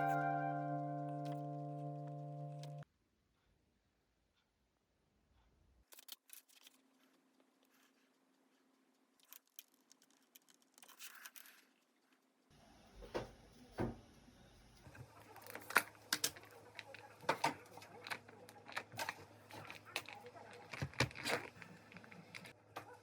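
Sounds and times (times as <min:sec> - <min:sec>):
small objects clicking and tapping: 0:05.8 - 0:12.4.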